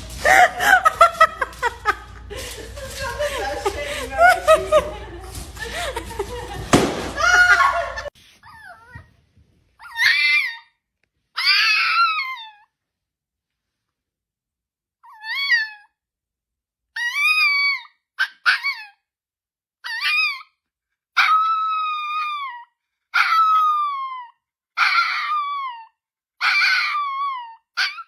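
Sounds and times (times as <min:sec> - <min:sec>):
dog yelping: 0:09.8 - 0:10.7, 0:11.4 - 0:12.6, 0:15.0 - 0:15.9, 0:17.0 - 0:19.0, 0:19.8 - 0:20.5, 0:21.2 - 0:28.0.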